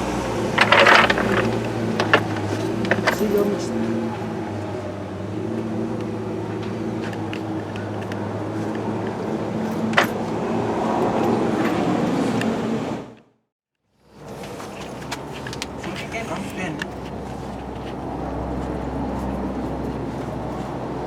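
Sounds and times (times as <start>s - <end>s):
diesel engine running: 0.0s - 13.2s, 14.1s - 21.0s
metal clicks and clanks: 0.6s - 3.6s.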